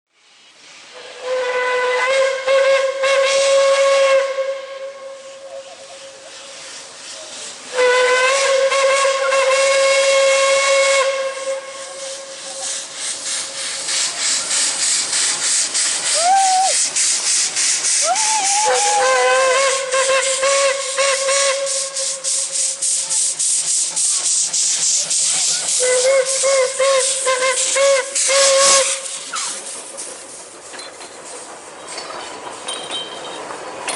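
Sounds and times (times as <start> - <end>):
steam locomotive whistle: 0.9 - 6.2, 7.6 - 12.8, 16.0 - 16.9, 17.8 - 22.9, 25.6 - 29.6.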